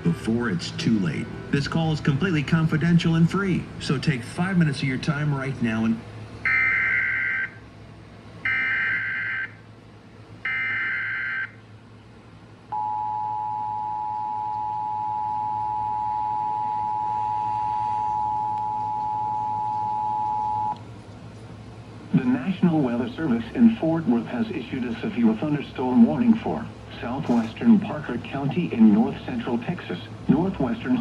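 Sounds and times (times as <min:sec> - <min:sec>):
two-tone attention signal: 0:12.7 - 0:20.8.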